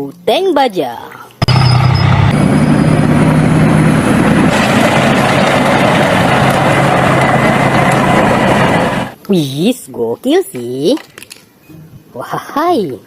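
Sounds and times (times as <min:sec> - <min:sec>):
tank engine running: 0:01.4 - 0:09.2.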